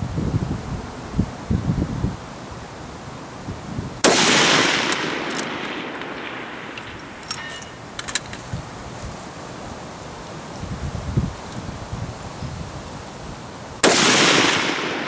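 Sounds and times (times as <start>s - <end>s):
rifle shot echoing: 4.0s - 7.6s, 13.8s - 15.0s
light metallic clicks: 4.9s - 8.5s.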